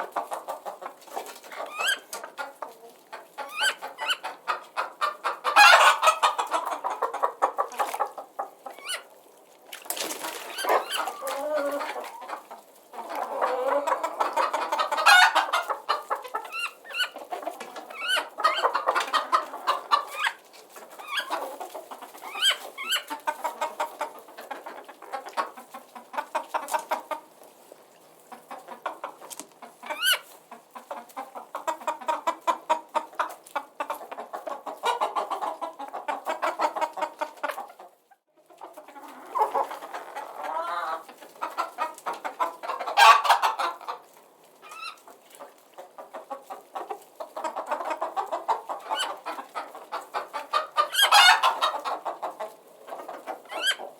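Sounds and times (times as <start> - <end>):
chickens clucking: 0.0 - 53.9.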